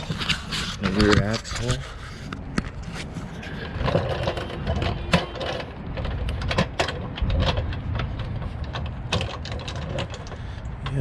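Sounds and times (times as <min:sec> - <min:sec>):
car jack clicking and knocking: 0:03.6 - 0:11.0.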